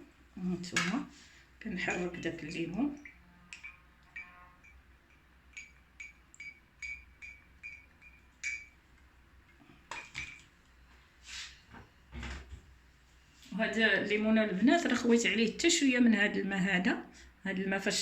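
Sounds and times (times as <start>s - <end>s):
metal spoon clinking in glass: 3.0s - 8.8s.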